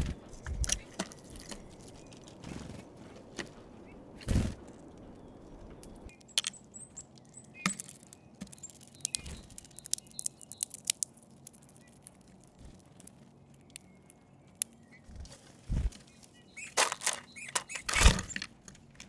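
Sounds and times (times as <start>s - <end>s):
beaks cracking seeds: 0.3s - 2.2s, 6.1s - 14.9s, 15.9s - 19.0s.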